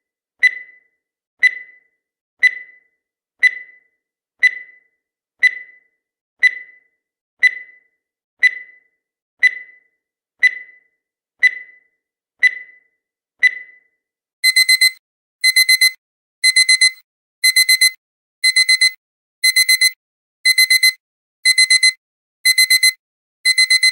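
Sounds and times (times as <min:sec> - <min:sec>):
countdown timer beeps: 0:00.4 - 0:10.8, 0:14.4 - 0:23.9
timer alarm quick beeps: 0:14.4 - 0:23.9.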